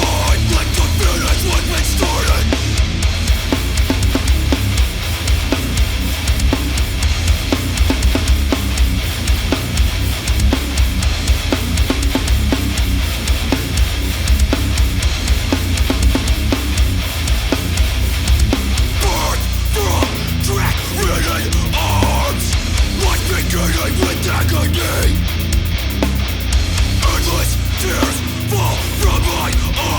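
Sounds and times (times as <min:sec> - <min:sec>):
drum hits: 0:00.0 - 0:19.3
distorted guitar and bass: 0:00.0 - 0:29.9.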